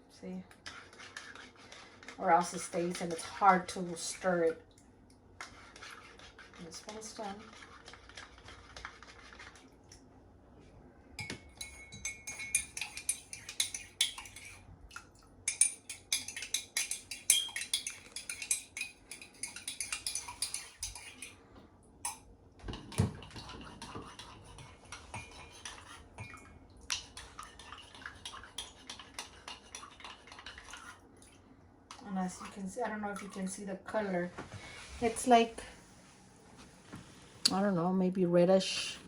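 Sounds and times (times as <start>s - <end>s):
spoon clinking in a cup: 11.2s - 14.6s, 15.5s - 21.4s, 22.0s - 22.3s.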